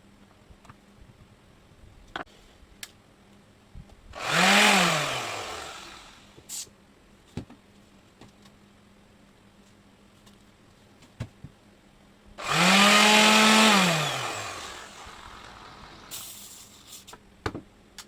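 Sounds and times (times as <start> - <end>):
orbital sander motor: 4.2 - 6.4, 12.4 - 16.3.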